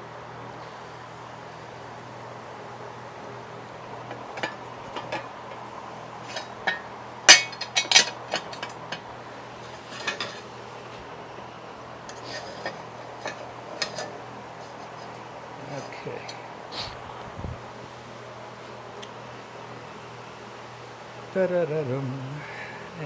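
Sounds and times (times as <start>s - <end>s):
metal parts clinking and knocking: 6.2s - 8.8s.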